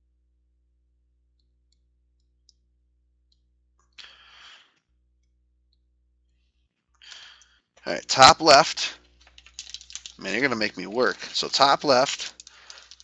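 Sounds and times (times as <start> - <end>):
low electrical hum: 0.0 - 13.0
faint clicks: 9.0 - 13.0.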